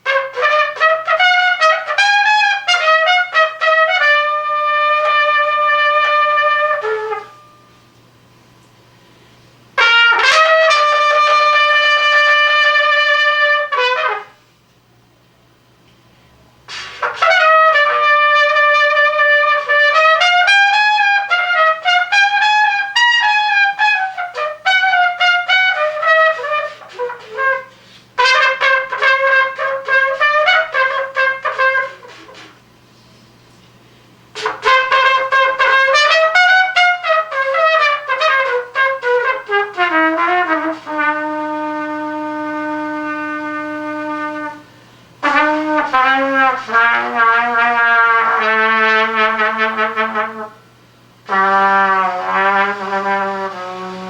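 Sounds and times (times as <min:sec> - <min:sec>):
solo trumpet playing jazz: 0:00.0 - 0:14.9, 0:16.0 - 0:54.0
trumpeter breathing: 0:08.7 - 0:10.5, 0:16.0 - 0:18.5, 0:25.5 - 0:28.6, 0:31.4 - 0:35.6, 0:44.4 - 0:46.8.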